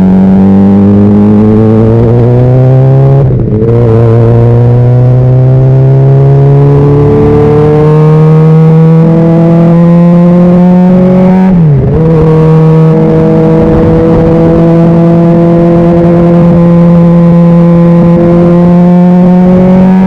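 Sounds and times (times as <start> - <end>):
motorcycle engine running: 10.9 - 20.0.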